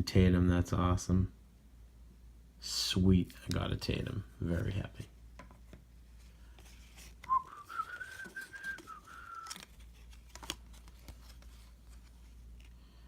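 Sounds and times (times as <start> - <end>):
person whistling a sliding note: 7.2 - 9.7
trading cards clicking: 7.9 - 11.5.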